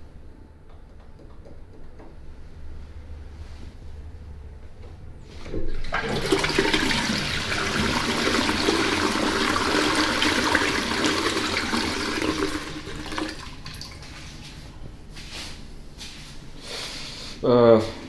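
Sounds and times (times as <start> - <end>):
toilet flushing: 5.4 - 14.6.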